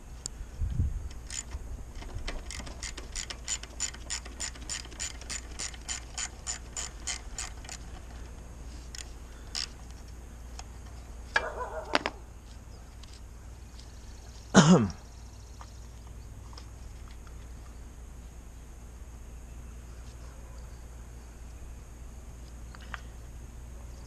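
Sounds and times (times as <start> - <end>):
hand ratchet clicking: 1.1 - 8.3, 8.9 - 9.8.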